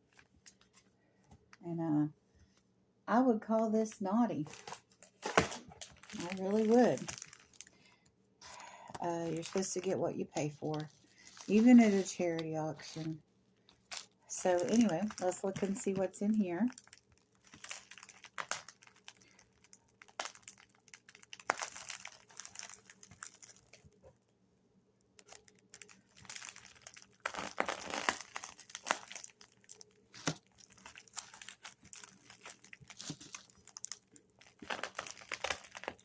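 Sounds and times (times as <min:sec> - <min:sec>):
packaging tearing: 0:04.5 - 0:07.7, 0:10.7 - 0:13.1, 0:13.8 - 0:23.8, 0:25.2 - 0:36.0
packaging crinkling: 0:04.5 - 0:24.0, 0:25.2 - 0:36.0.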